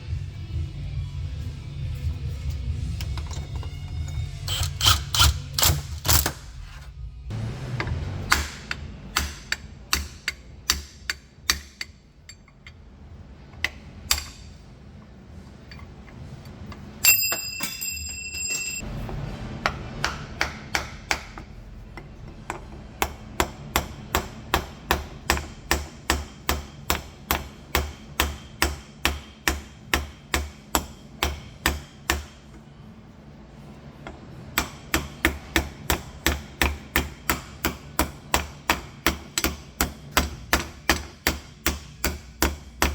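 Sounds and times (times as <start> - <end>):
hammer tapping on metal: 8.3 - 12.8, 19.6 - 32.5, 34.1 - 42.9
high metallic ring: 16.8 - 18.9.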